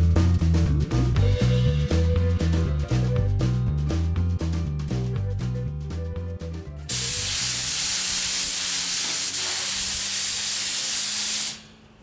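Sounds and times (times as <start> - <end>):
background music: 0.0 - 7.7
spray gun air hiss: 6.9 - 11.8.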